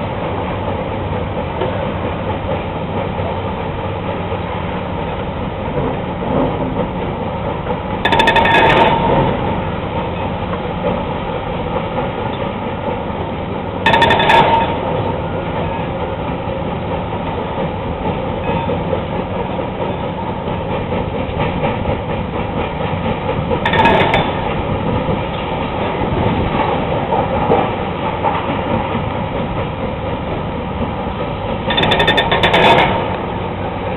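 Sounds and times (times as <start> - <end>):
clattering surges: 8.0 - 9.6, 13.8 - 33.9
rock crusher grinding rumble: 8.0 - 9.6, 13.8 - 15.0, 22.7 - 27.6.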